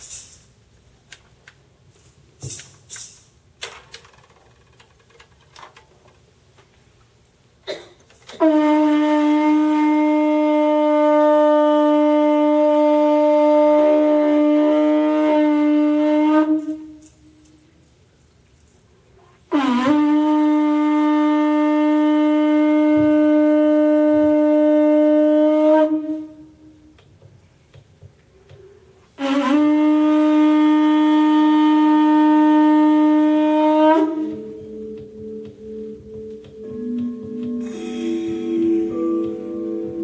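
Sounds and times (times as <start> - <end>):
horn blasts: 8.3 - 17.6, 19.2 - 27.1, 29.2 - 40.0
struck bell-like tones: 34.4 - 40.0.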